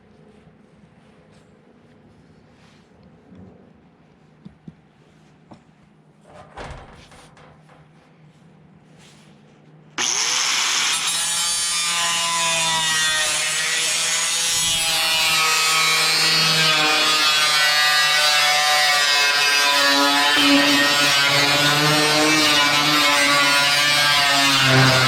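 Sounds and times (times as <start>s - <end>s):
power tool cutting sheet metal: 10.0s - 25.0s.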